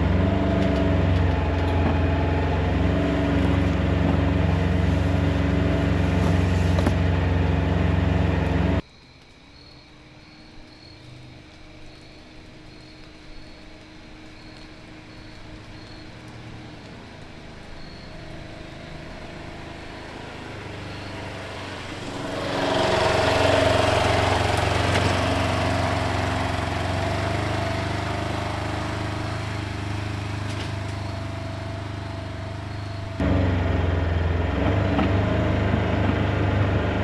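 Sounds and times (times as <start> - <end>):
diesel tractor engine running: 0.0 - 8.8, 10.6 - 37.0.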